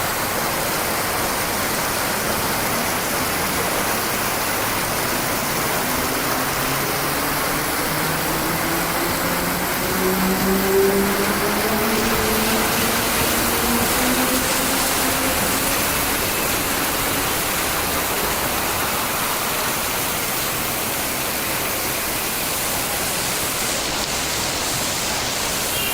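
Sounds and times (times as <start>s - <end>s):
rainwater pouring: 0.0s - 25.9s
faint rising whine: 2.8s - 18.5s.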